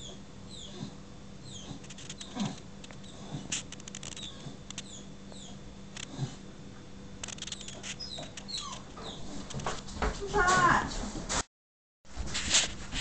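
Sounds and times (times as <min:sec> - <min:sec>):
sharp clicks: 0:07.2 - 0:08.8.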